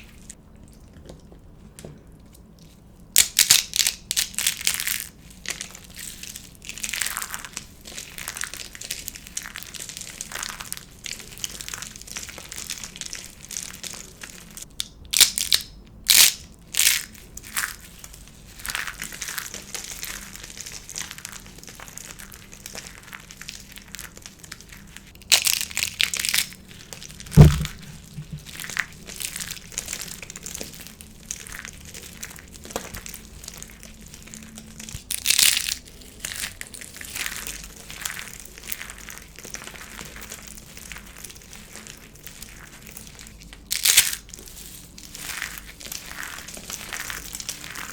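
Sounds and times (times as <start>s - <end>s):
dry soap crackling crunches: 2.3s - 47.9s
sharp low thump: 27.3s - 28.5s.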